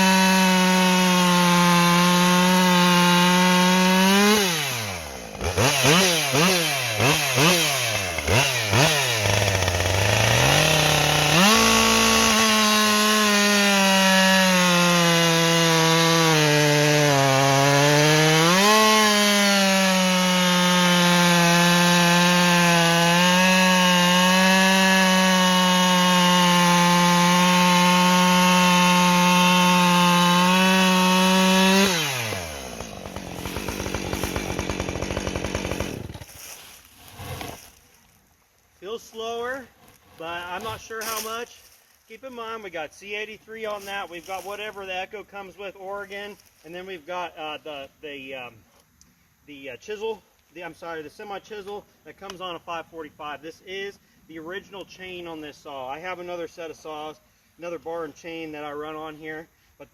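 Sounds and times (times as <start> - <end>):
chainsaw cutting through log: 0.0 - 38.2, 38.8 - 41.9, 43.6 - 44.8.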